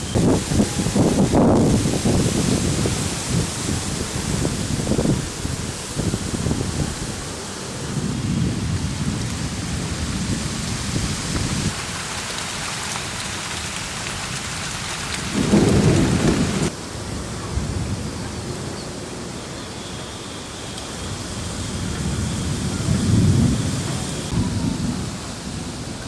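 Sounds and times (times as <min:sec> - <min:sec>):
loud thunder clap: 0:00.0 - 0:06.9, 0:13.1 - 0:16.8, 0:21.9 - 0:25.7
thunder rumbling: 0:00.0 - 0:19.3, 0:21.0 - 0:26.0
steady rain: 0:00.0 - 0:26.0.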